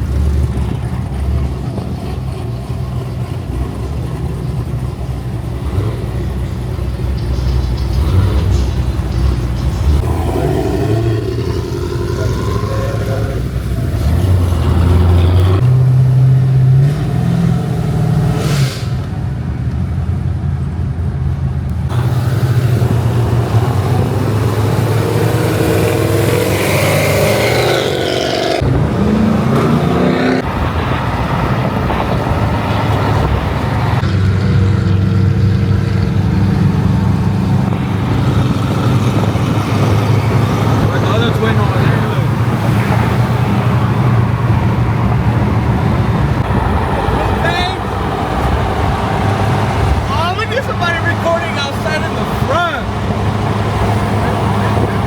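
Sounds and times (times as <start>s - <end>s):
car engines revving: 0.0s - 55.0s.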